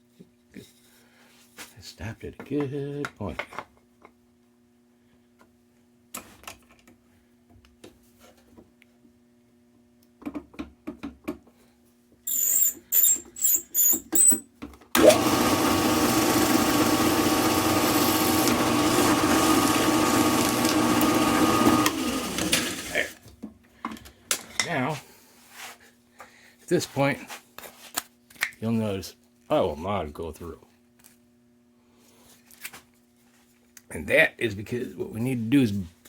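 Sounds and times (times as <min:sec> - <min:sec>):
drill motor running: 0:15.0 - 0:23.2.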